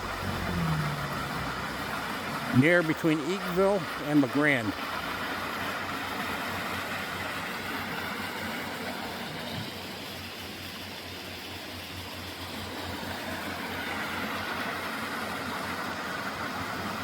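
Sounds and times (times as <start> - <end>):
low rumble: 0.0 - 2.6
waterfall rushing: 0.0 - 17.0.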